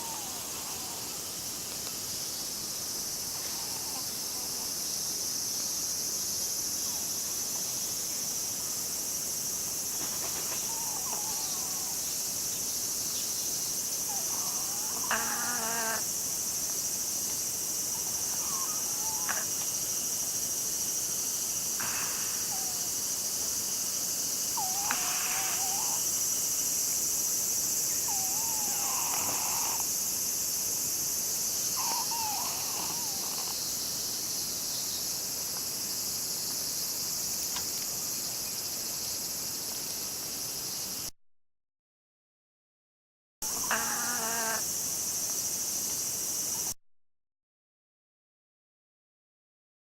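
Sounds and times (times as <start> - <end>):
high drone of insects: 0.0 - 41.1, 43.4 - 46.8
cat snoring with whistling squeak: 14.1 - 16.0, 24.6 - 26.0, 28.1 - 29.9, 31.8 - 33.6, 43.6 - 44.6.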